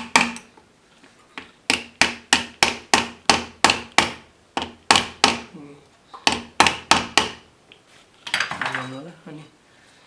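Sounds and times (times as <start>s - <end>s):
hammer tapping metal: 0.0s - 0.5s.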